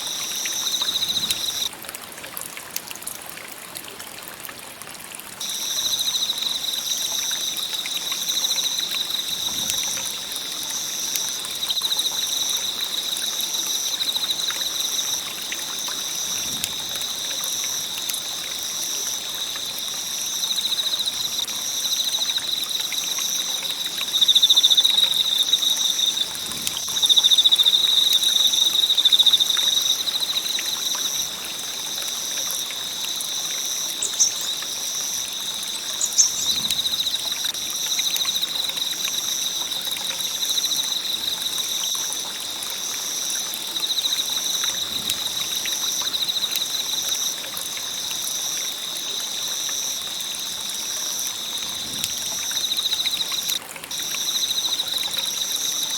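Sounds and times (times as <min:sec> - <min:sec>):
campfire crackling: 0:24.0 - 0:31.6, 0:43.8 - 0:47.3.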